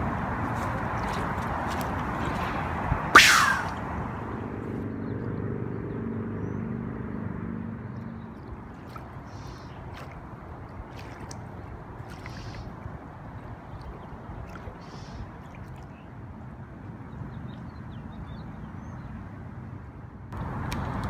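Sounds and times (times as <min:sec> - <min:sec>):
fast river rushing: 0:00.0 - 0:04.0
motorboat engine humming: 0:00.0 - 0:18.4, 0:20.4 - 0:21.0.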